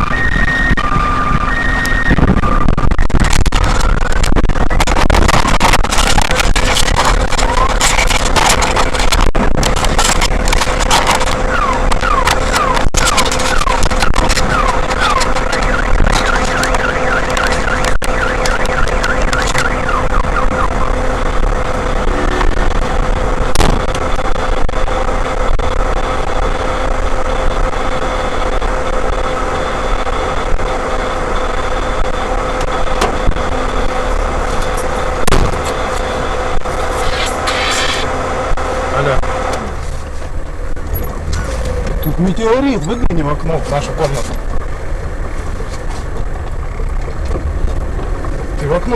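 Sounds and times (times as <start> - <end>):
car alarm rising chirp: 0.0 - 3.0, 11.4 - 21.3
low vehicle rumble: 0.0 - 48.9
steady alarm tone: 11.2 - 23.3.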